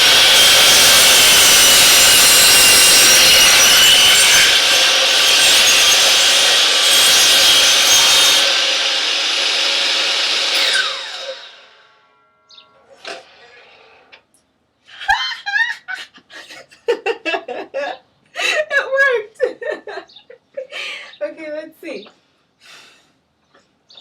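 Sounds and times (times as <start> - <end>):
saw blade winding down: 0.0 - 12.2, 12.9 - 14.2
miter saw cutting wood: 0.0 - 14.3.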